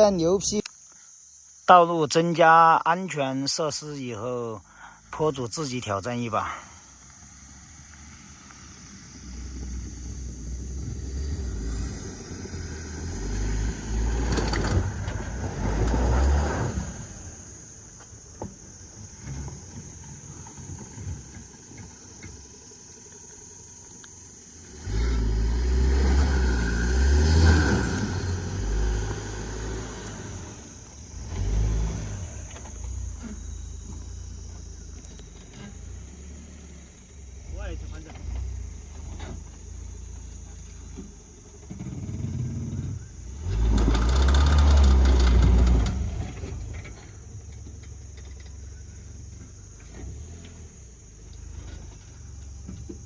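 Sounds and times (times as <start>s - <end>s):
car engine revving hard: 9.3s - 17.2s, 24.6s - 32.6s, 41.7s - 46.7s.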